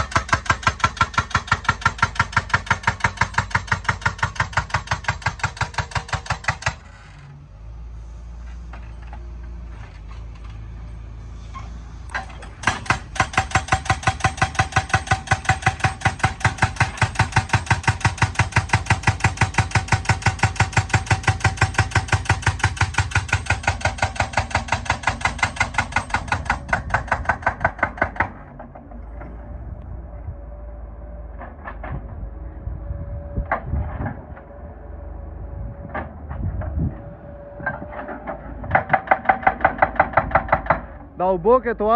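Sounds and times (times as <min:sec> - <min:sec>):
hydraulic breaker hammering: 0:00.0 - 0:06.9, 0:12.2 - 0:28.9, 0:37.9 - 0:41.0
excavator engine running: 0:00.0 - 0:41.9.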